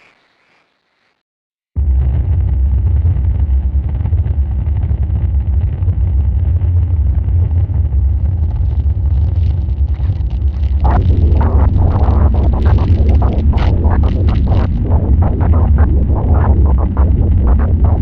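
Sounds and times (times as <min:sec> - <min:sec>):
distorted low rumbling drone: 0:01.8 - 0:18.0
crackling hiss: 0:08.2 - 0:18.0.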